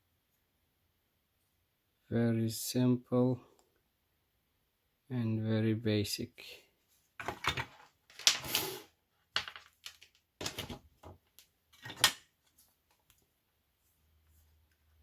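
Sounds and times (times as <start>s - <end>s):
plastic parts clicking and clattering: 7.2s - 8.7s, 9.4s - 12.3s.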